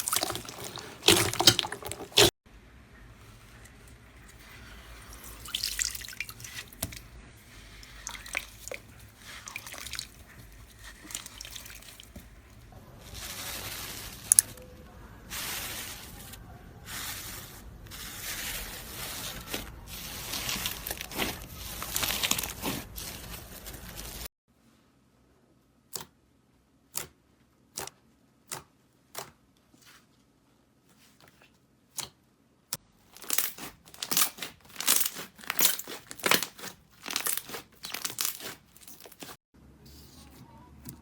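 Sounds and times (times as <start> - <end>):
slime squished by hand: 0.0 - 2.3, 7.7 - 12.4, 33.2 - 39.4.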